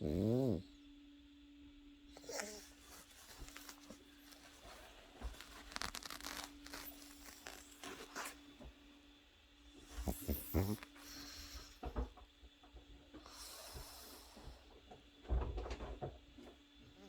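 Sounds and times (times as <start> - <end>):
scratchy rustling and crinkling: 2.3 - 8.8.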